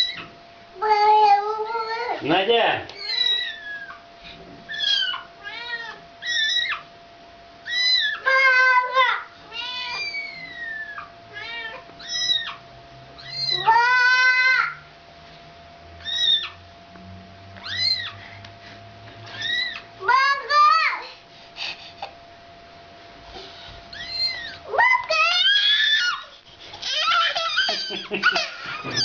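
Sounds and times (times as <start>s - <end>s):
cat meowing: 3.0s - 4.0s, 4.7s - 6.8s, 9.4s - 12.6s, 13.2s - 14.6s, 16.0s - 16.6s, 17.6s - 18.2s, 19.3s - 19.8s, 23.9s - 26.0s
kitten mewing: 3.0s - 4.0s, 4.7s - 6.8s, 9.5s - 12.6s, 13.2s - 14.5s, 16.0s - 16.6s, 17.6s - 18.2s, 19.3s - 19.8s, 23.9s - 26.2s, 26.8s - 29.0s.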